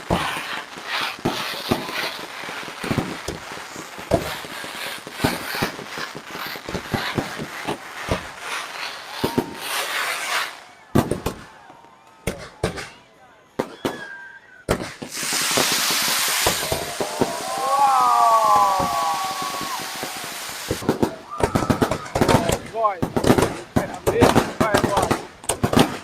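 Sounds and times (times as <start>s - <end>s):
fireworks bangs: 0.0s - 26.0s
fireworks crackling: 0.0s - 26.0s
crowd voices: 8.6s - 14.6s, 15.8s - 23.0s.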